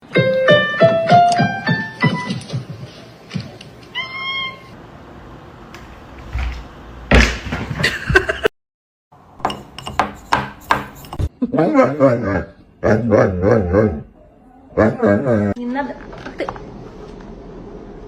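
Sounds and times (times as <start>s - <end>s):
cat meow: 3.9s - 4.8s.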